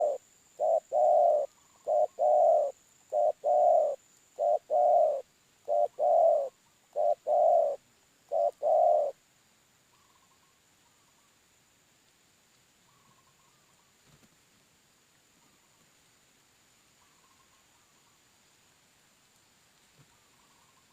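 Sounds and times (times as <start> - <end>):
dove cooing: 0.0 - 9.2.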